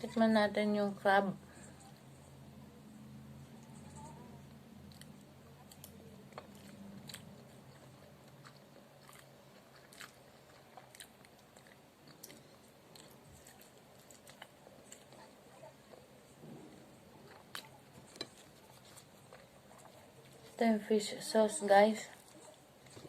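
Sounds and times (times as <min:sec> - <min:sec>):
chewing and biting: 0:03.6 - 0:20.6.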